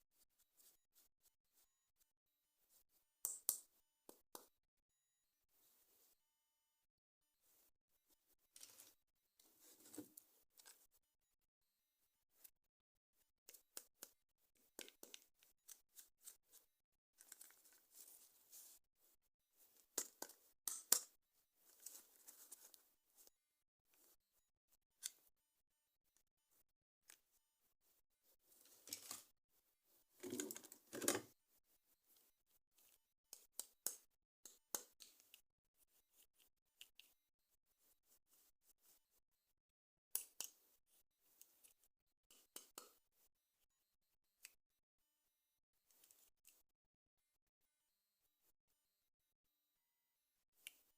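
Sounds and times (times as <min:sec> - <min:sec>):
packaging clicks and rustles: 0:28.7 - 0:29.3, 0:30.2 - 0:31.3.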